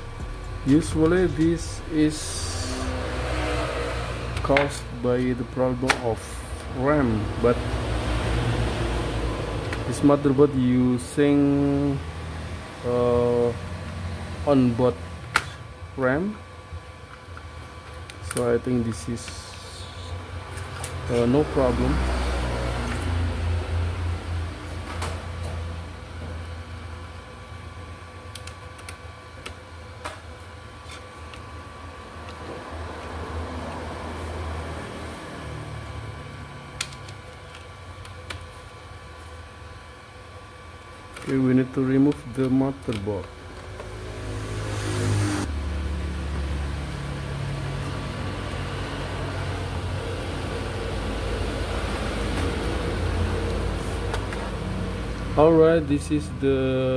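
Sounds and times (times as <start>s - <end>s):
low background rumble: 0.0s - 5.6s
low hum: 0.0s - 28.9s.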